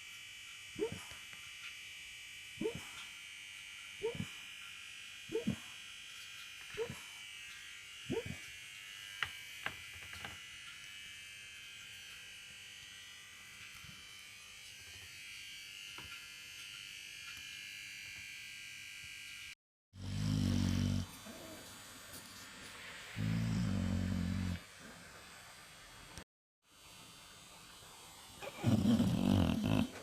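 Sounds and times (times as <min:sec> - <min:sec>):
dog snoring: 0:02.6 - 0:02.9, 0:04.0 - 0:04.3, 0:05.3 - 0:05.7, 0:08.1 - 0:08.4, 0:20.0 - 0:21.7, 0:23.2 - 0:25.0, 0:28.4 - 0:30.0.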